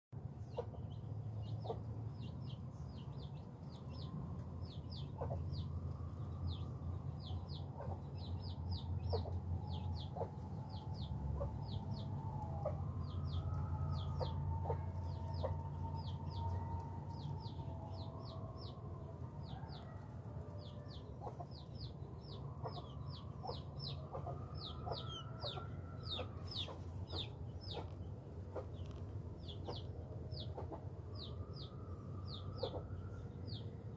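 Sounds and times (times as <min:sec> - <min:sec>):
low hum: 0:00.2 - 0:33.9
chickens clucking: 0:05.0 - 0:05.6, 0:07.8 - 0:08.2, 0:09.0 - 0:10.4, 0:14.2 - 0:16.3, 0:21.2 - 0:21.7, 0:22.6 - 0:28.8, 0:29.5 - 0:30.9, 0:32.6 - 0:32.8.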